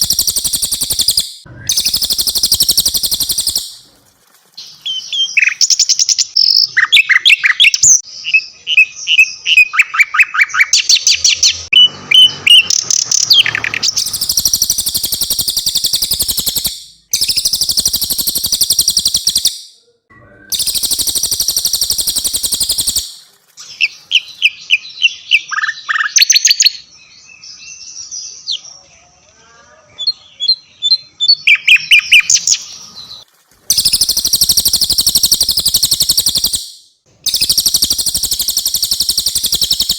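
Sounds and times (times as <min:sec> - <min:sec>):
rapid buzzing bird trills: 0:00.0 - 0:03.8, 0:14.0 - 0:19.7, 0:20.5 - 0:23.2, 0:33.7 - 0:39.9
songbirds chirping and whistling: 0:00.0 - 0:03.8, 0:04.6 - 0:29.0, 0:29.9 - 0:39.9.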